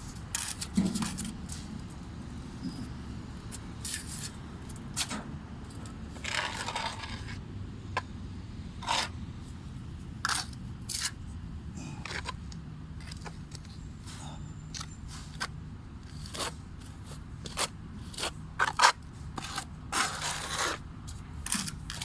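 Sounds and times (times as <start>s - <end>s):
hand tool scraping a surface: 6.2s - 7.4s, 8.8s - 9.2s, 16.1s - 20.8s, 21.4s - 22.0s.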